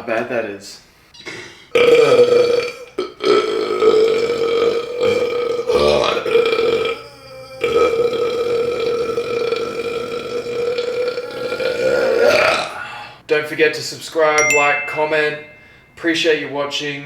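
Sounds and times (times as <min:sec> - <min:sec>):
man belching: 0:01.7 - 0:13.0.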